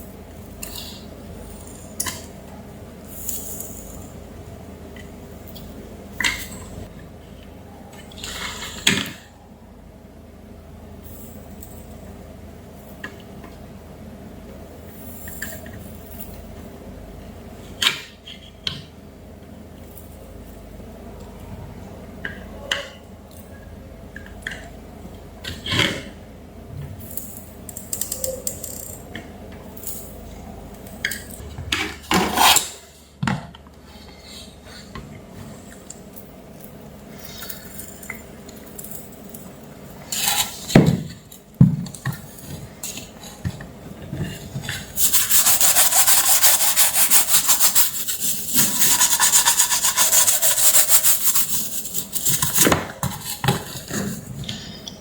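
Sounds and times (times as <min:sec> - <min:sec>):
rapid rubbing or scraping: 0:45.0 - 0:52.7.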